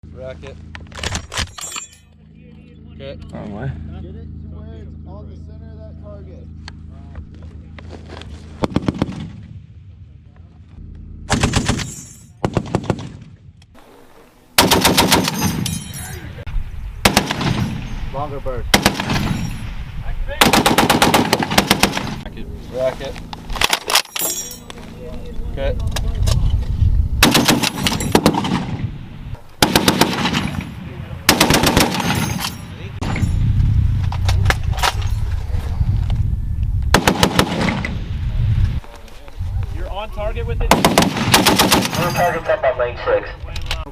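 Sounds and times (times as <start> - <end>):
heavy machine gun bursts: 14.6 - 15.7, 17.0 - 17.9, 20.4 - 22.2, 27.2 - 28.8, 29.6 - 30.7, 31.3 - 32.5, 36.9 - 37.8, 40.7 - 42.5.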